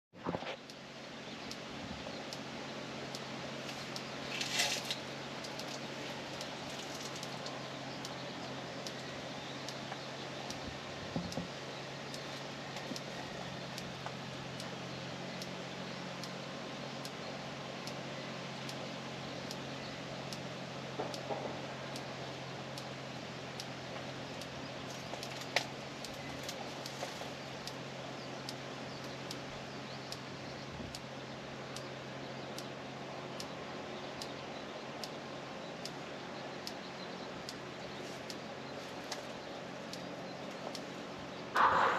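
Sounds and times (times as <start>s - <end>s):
low hum: 0.2s - 41.9s
faint high ticks: 0.5s - 41.9s
faint bird chirps: 0.6s - 41.9s
sharp click: 41.6s - 41.9s.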